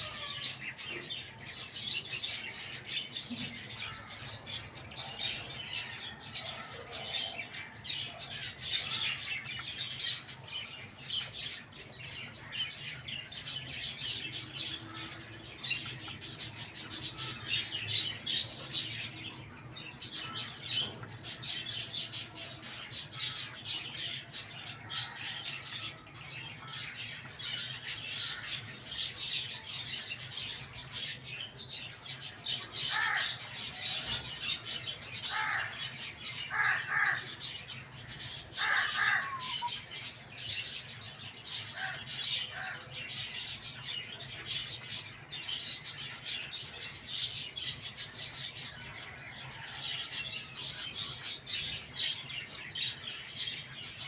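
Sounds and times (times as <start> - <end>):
small birds chirping: 0.0 - 54.0
lower bird calls: 38.5 - 40.0.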